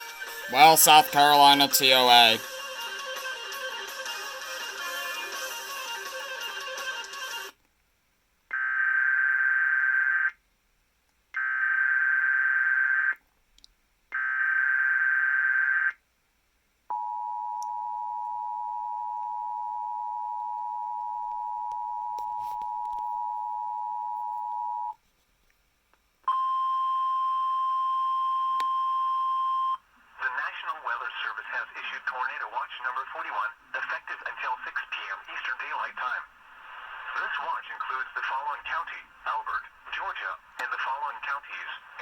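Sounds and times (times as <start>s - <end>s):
steady weather radio alert tone: 0.5s - 2.4s, 30.2s - 42.0s.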